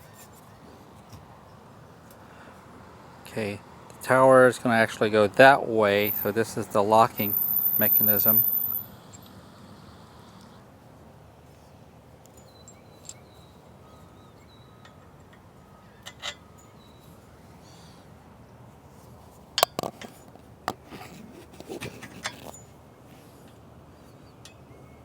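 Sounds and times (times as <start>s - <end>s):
metal clinks and clanks: 6.1s - 6.4s, 7.2s - 9.2s.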